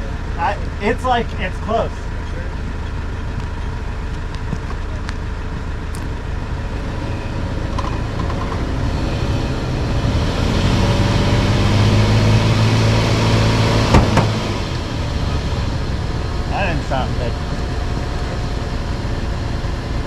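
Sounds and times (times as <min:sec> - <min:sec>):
vehicle engine revving under load: 0:05.9 - 0:20.0.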